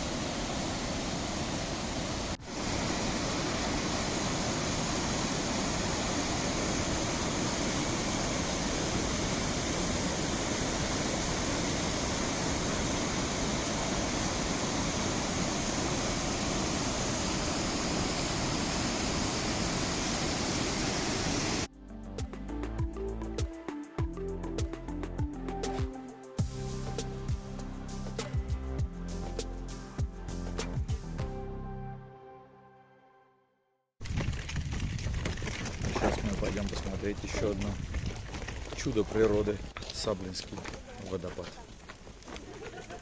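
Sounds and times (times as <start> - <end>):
waterfall roaring: 0.0 - 21.7.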